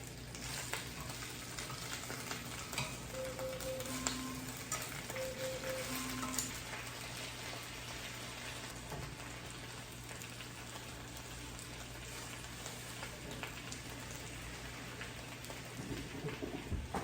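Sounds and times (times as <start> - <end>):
tofu sizzling in a pan: 6.7 - 16.2.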